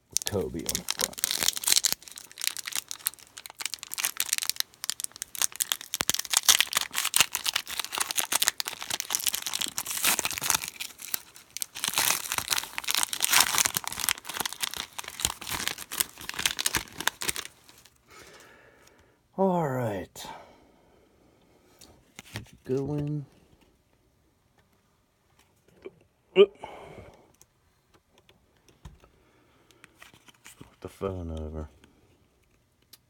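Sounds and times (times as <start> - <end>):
wrapper tearing and crinkling: 0.1 - 18.0.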